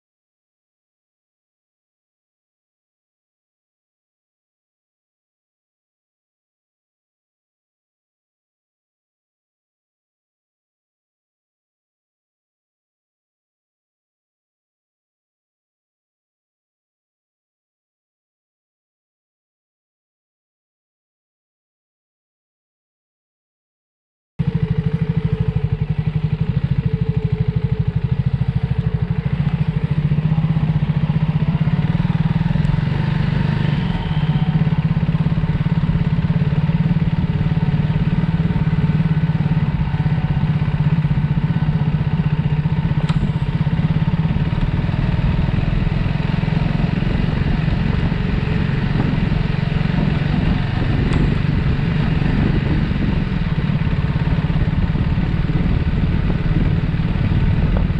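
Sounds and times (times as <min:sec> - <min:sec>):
motorcycle engine running: 0:24.4 - 0:57.9.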